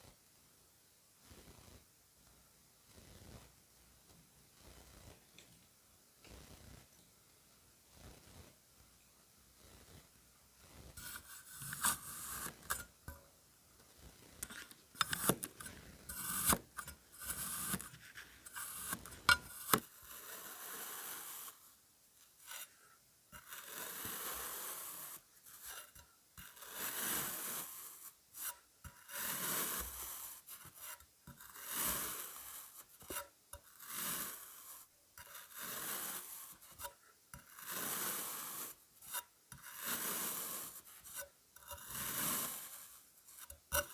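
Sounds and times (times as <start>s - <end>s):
blade scraping kinetic sand: 10.6s - 13.2s, 13.9s - 43.9s.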